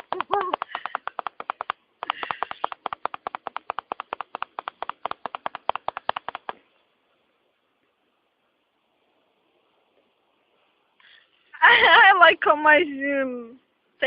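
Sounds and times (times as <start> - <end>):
rapid tapping clicks: 0.0 - 6.6.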